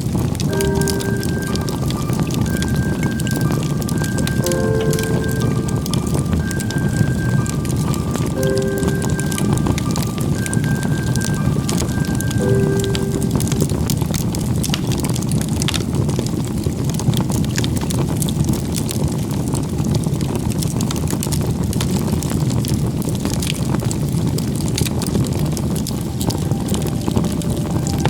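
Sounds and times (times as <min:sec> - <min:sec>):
wood fire crackling: 0:00.0 - 0:28.0.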